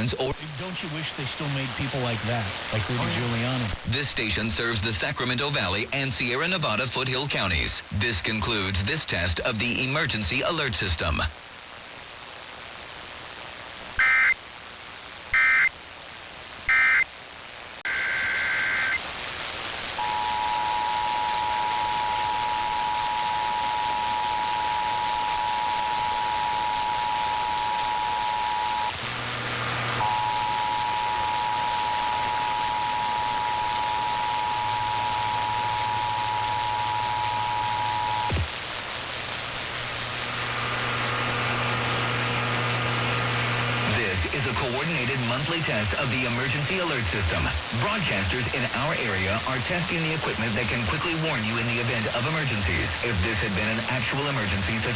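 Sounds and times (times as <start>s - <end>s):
radio hiss: 0.0s - 54.9s
data bursts: 14.0s - 14.4s, 15.3s - 15.7s, 16.7s - 17.0s, 17.9s - 19.0s, 20.0s - 29.0s, 29.9s - 38.5s.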